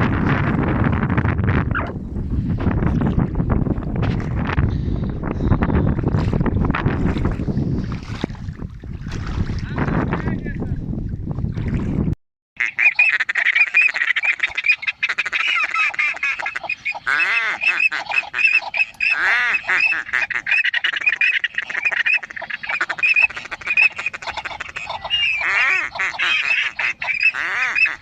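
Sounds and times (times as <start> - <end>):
ducks quacking: 12.6 - 28.0.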